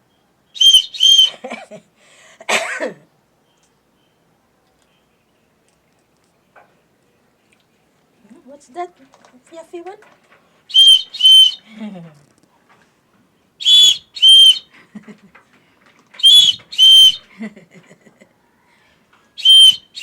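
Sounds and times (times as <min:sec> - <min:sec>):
whistle double blasts: 0:00.6 - 0:01.3, 0:10.7 - 0:11.6, 0:13.6 - 0:14.6, 0:16.2 - 0:17.2, 0:19.4 - 0:20.0.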